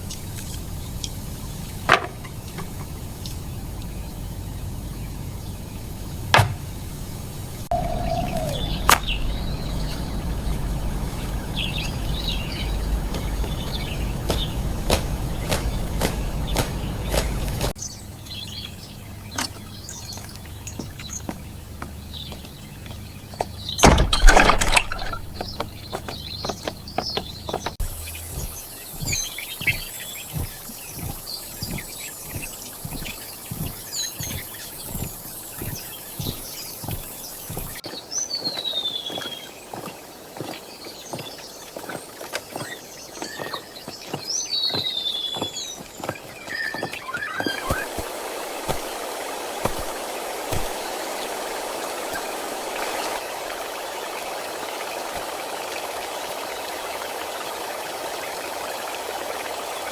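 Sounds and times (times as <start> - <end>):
small birds chirping: 0.0 - 59.9
footsteps: 12.8 - 17.8, 20.2 - 53.2
steady low hum: 26.2 - 37.8.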